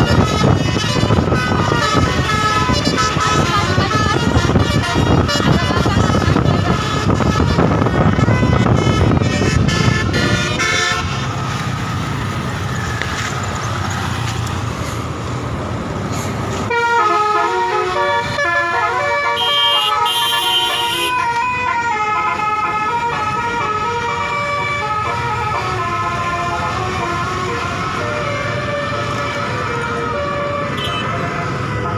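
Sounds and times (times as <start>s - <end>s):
bus horn playing a tune: 0.0s - 11.4s, 16.7s - 28.5s, 30.4s - 31.9s
low engine and traffic rumble: 0.0s - 31.9s.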